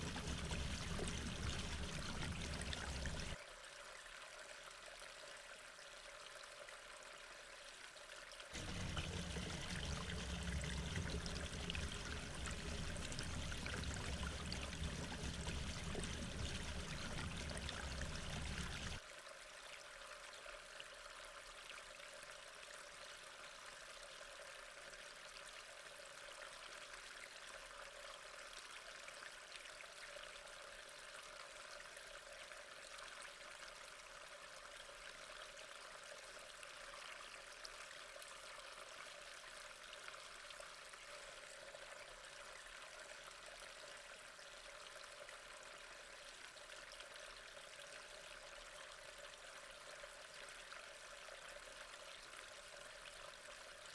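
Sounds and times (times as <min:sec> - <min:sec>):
water drips and splashes: 0:00.0 - 0:03.4, 0:08.5 - 0:19.1
water trickling: 0:00.0 - 0:03.4, 0:08.6 - 0:19.0.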